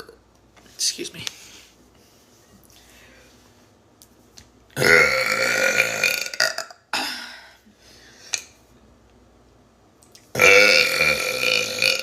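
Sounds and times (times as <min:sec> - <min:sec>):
person burping loudly: 0:04.8 - 0:07.4, 0:10.3 - 0:12.0.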